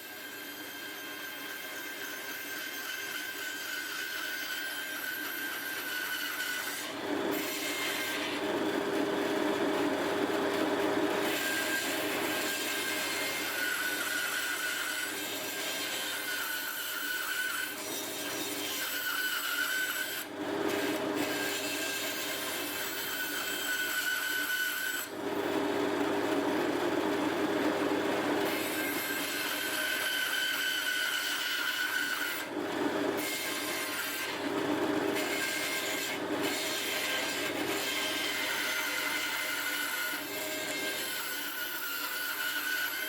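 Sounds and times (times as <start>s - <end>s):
woodworking power tool cutting wood: 0.0s - 43.0s.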